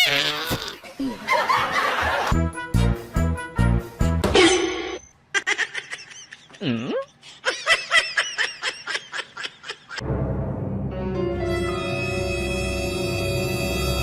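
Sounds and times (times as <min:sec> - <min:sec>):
steady music: 0:02.3 - 0:04.3, 0:10.0 - 0:14.0
person laughing: 0:05.3 - 0:10.0.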